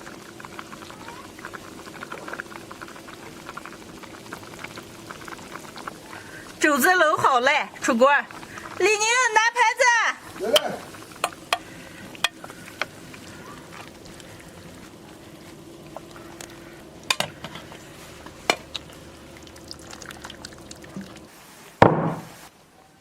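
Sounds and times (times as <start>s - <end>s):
liquid sounds: 0.0s - 21.8s
steady low hum: 10.2s - 21.3s
utensils clinking on pot: 17.1s - 17.6s
loud thump: 21.8s - 22.4s.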